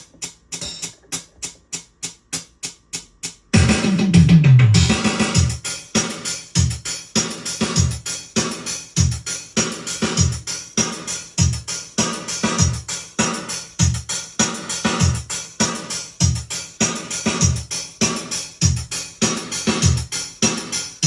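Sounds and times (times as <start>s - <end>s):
drum machine beat: 0.0s - 21.0s.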